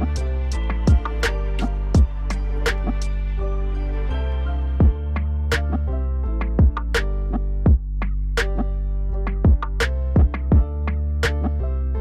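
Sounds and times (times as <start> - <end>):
electronic music with synth bass: 0.0 - 12.0
kick drum: 0.9 - 1.2, 2.0 - 2.2, 4.8 - 5.0, 6.5 - 7.0, 7.6 - 8.0, 9.3 - 11.0.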